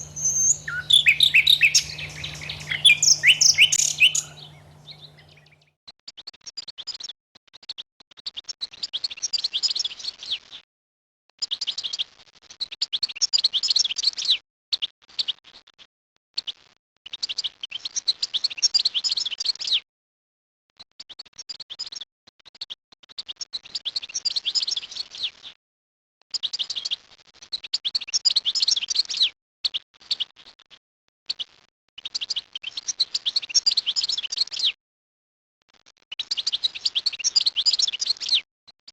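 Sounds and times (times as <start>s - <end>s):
songbird twittering: 0.0s - 5.6s.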